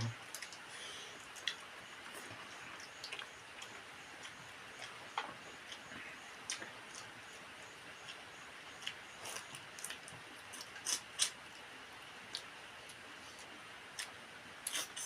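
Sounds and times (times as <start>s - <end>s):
mouth chewing food: 0.1s - 15.0s.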